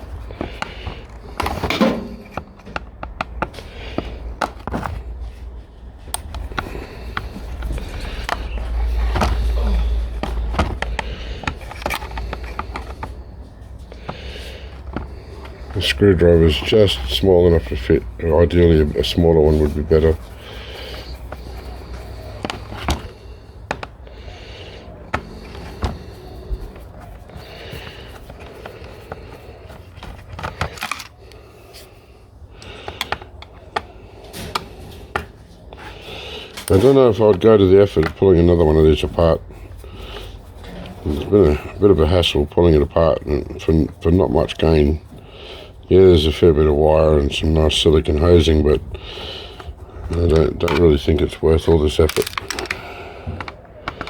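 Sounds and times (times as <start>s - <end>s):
low rumble of handling noise: 0.0s - 54.0s
screwdriver clicking on metal parts: 52.0s - 52.8s.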